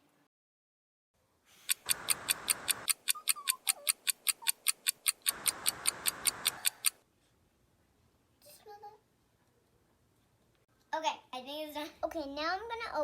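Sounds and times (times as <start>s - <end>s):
fast clock-like ticking: 1.7s - 7.0s
rushing hiss: 5.3s - 6.9s.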